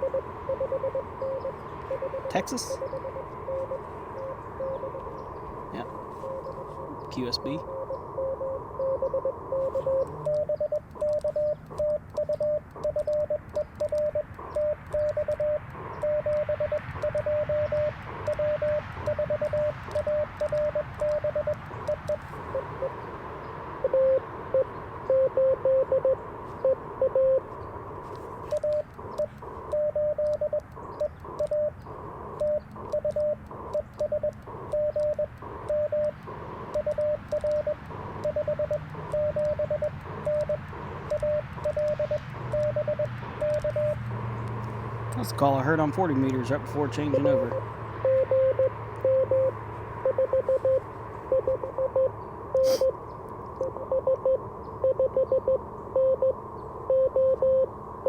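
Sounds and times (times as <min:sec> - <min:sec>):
morse code tones: 0:00.0 - 0:23.1, 0:23.8 - 0:53.0, 0:53.6 - 0:57.7
radio band hiss: 0:00.6 - 0:07.7, 0:09.5 - 0:10.6, 0:26.2 - 0:29.7, 0:30.8 - 0:47.9, 0:52.6 - 0:53.0.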